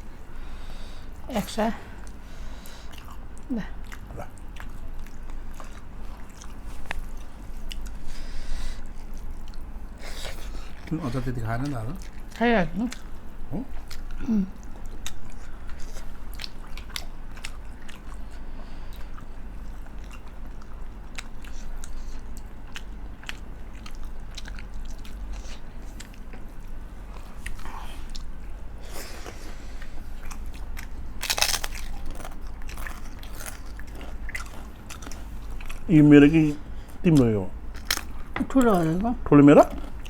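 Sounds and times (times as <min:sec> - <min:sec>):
person chewing with mouth clicks: 0:02.8 - 0:08.0, 0:12.9 - 0:28.3, 0:29.2 - 0:35.9
crunchy bite: 0:31.2 - 0:35.1.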